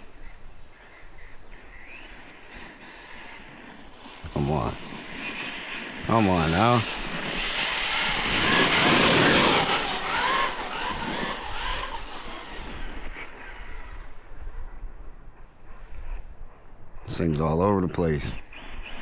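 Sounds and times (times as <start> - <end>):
rc truck motor whine: 5.1 - 14.2.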